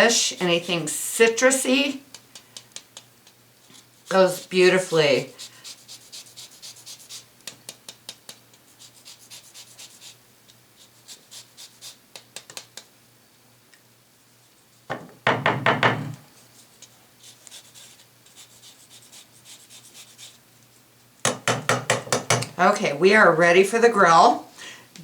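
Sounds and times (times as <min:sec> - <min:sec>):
grater scraping lemon: 0:02.1 - 0:10.2, 0:10.8 - 0:12.3
loud knocks: 0:14.9 - 0:16.2.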